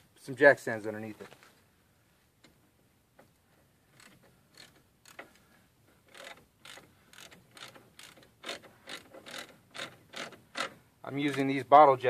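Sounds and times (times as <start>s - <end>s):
ratchet wrench clicking: 4.0s - 5.3s, 6.1s - 10.7s.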